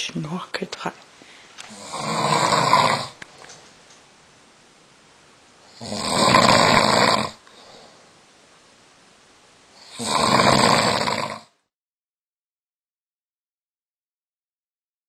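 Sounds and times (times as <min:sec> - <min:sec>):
man snoring: 0:01.7 - 0:03.2, 0:05.7 - 0:07.9, 0:09.8 - 0:11.6.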